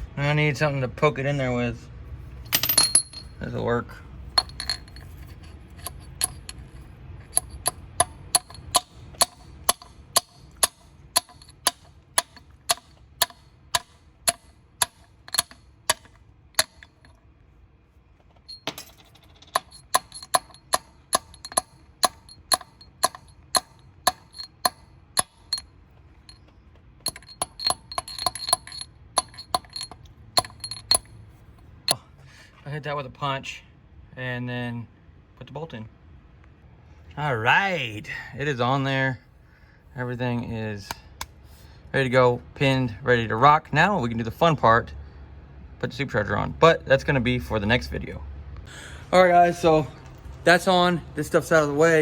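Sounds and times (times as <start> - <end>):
hammer tapping steel punch: 7.3 - 17.2, 19.5 - 25.7, 26.3 - 31.1.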